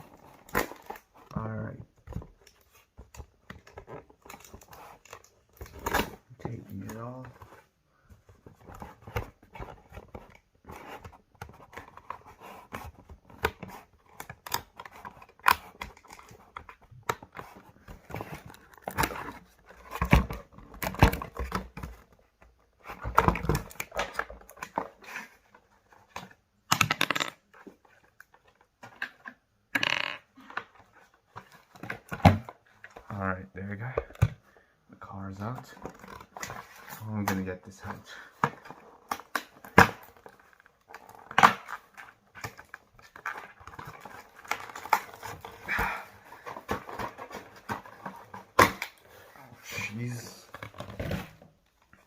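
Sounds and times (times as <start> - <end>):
packaging rustling and tearing: 35.8 - 52.0.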